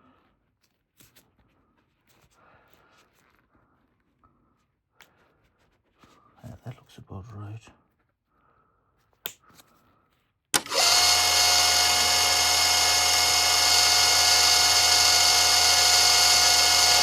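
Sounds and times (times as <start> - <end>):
motorised tool whining: 10.6 - 17.0.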